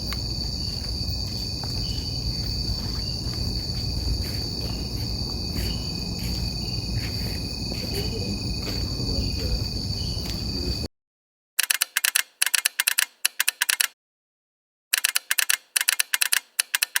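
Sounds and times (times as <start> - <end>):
crickets trilling: 0.0 - 10.9
keyboard typing clicks: 11.6 - 13.9, 15.0 - 17.0.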